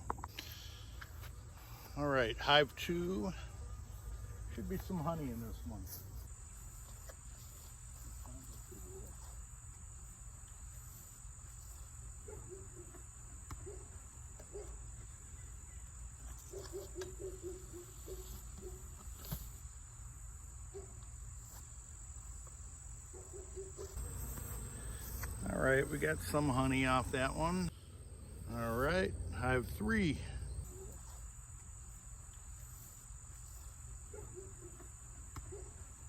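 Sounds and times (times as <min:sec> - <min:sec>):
insect trill: 0:00.3 - 0:36.0
honeybees buzzing past: 0:23.8 - 0:27.2.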